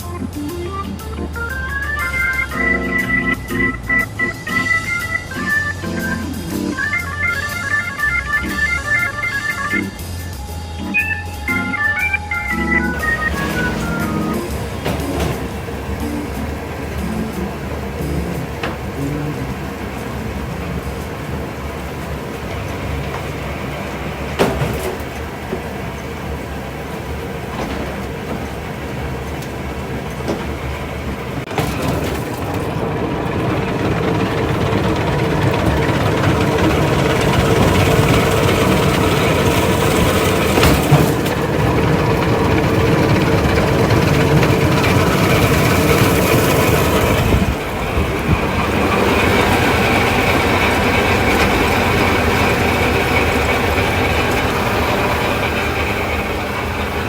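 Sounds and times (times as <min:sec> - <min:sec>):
processing machinery running: 0:00.0 - 0:57.0
knocks and clatters: 0:13.2 - 0:57.0.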